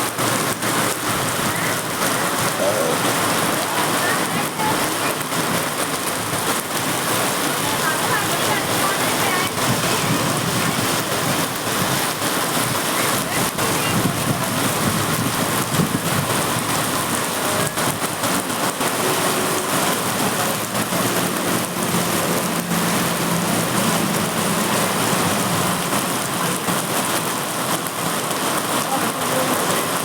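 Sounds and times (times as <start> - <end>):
heavy rain falling: 0.0 - 30.0.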